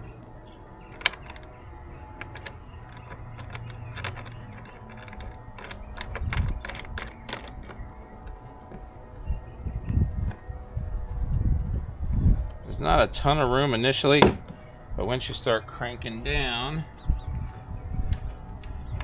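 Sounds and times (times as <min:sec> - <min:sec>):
metal hardware clicking and clanking: 0:00.0 - 0:09.5, 0:14.0 - 0:14.6.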